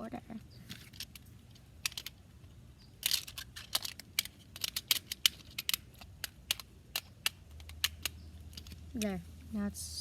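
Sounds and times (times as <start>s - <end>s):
plastic toys clicking and tapping: 0.7s - 2.2s, 2.9s - 9.2s.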